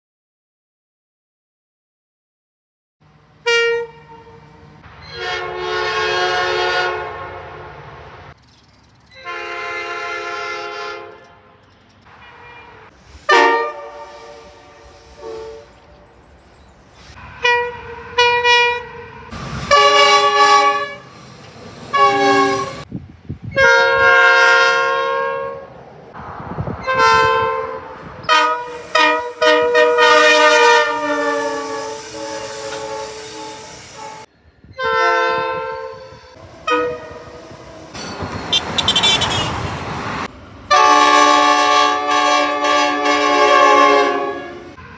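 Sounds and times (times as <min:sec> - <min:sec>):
train horn blasts: 0:03.4 - 0:08.0, 0:09.2 - 0:16.1, 0:17.1 - 0:21.2, 0:21.9 - 0:22.9, 0:23.5 - 0:25.7, 0:26.8 - 0:37.9, 0:38.5 - 0:39.7, 0:40.7 - 0:44.9.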